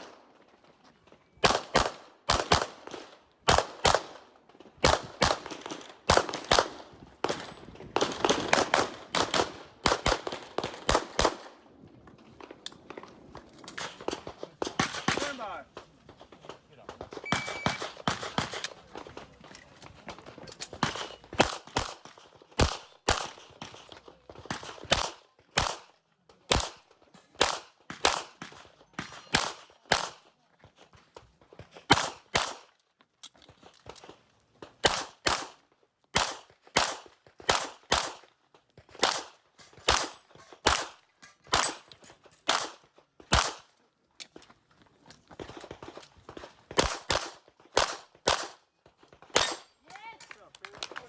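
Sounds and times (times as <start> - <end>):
pistol shots: 1.4 - 4.2, 17.0 - 18.8, 34.8 - 35.6, 36.2 - 38.2, 38.9 - 41.8, 42.4 - 43.6, 46.7 - 48.6, 49.3 - 49.7.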